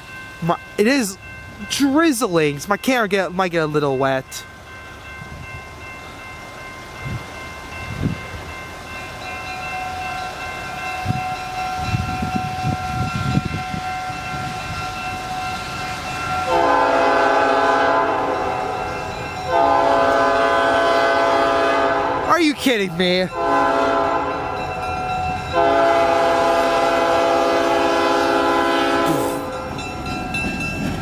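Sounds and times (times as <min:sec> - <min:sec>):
locomotive engine rumble and whine: 0:02.4 - 0:31.0
train air horn blasts: 0:16.4 - 0:18.7, 0:19.5 - 0:22.3, 0:23.3 - 0:24.6, 0:25.5 - 0:29.6.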